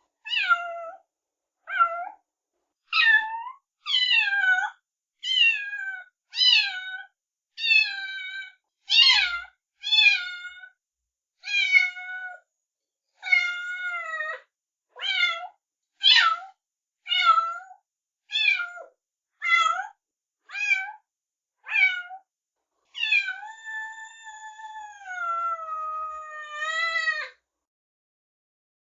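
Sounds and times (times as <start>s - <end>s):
kitten meowing: 0.3s - 1.0s, 3.0s - 7.0s, 7.6s - 10.6s, 11.5s - 12.4s, 13.2s - 14.2s, 17.1s - 17.7s, 18.3s - 19.9s, 20.5s - 21.0s, 21.7s - 22.2s, 23.0s - 27.4s.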